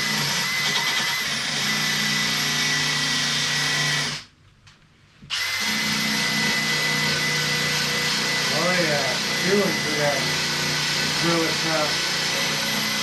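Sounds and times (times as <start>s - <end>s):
power tool motor whining: 0.0s - 4.2s, 5.3s - 13.0s.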